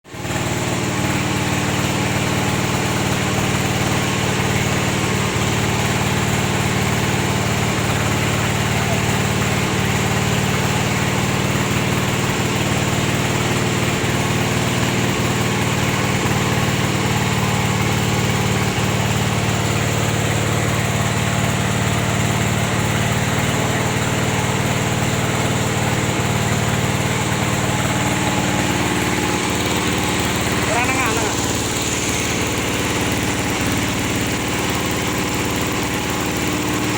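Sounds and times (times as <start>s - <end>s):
small engine running steadily: 0.0s - 36.9s.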